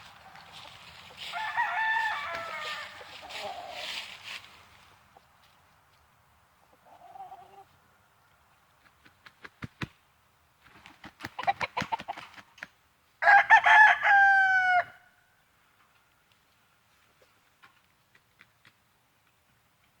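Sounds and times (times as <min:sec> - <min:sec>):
chicken clucking: 0:00.1 - 0:04.1, 0:06.6 - 0:07.8
rooster crowing: 0:01.2 - 0:03.9, 0:13.2 - 0:15.2.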